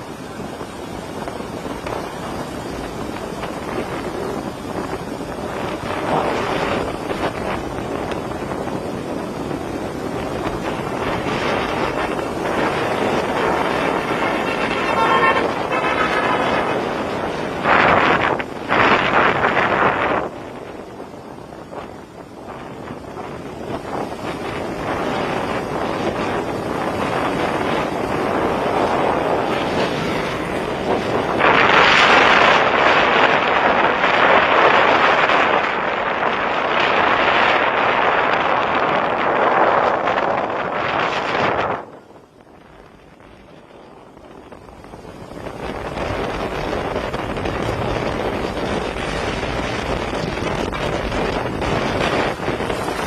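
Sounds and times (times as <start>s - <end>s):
floodwater rushing: 0.0s - 53.0s
wind buffeting microphone: 0.0s - 53.0s
short pitched tone: 14.2s - 16.7s.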